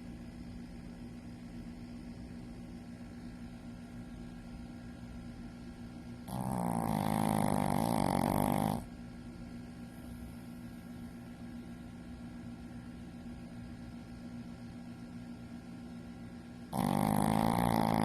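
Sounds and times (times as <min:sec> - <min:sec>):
faint steady hum: 0:00.0 - 0:18.0
dog snoring: 0:06.2 - 0:08.9, 0:16.6 - 0:18.0.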